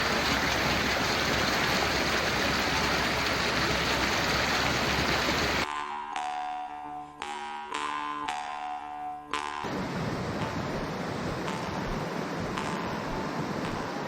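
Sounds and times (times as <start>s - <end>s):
waterfall roaring: 0.0s - 5.6s, 9.6s - 14.0s
music with plucked notes: 5.7s - 9.7s.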